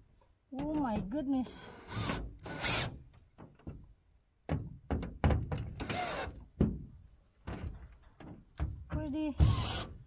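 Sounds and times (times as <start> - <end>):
tools and panels knocking: 4.5 - 9.8.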